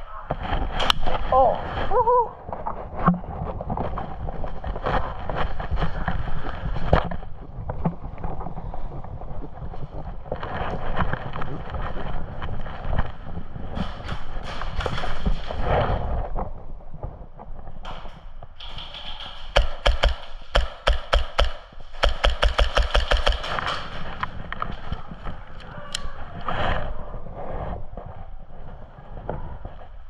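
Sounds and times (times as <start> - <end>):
wind rumble on microphone: 0.0 - 19.4, 23.3 - 30.0
microphone handling noise: 0.0 - 30.0
sharp clicks and snaps: 17.8 - 26.2.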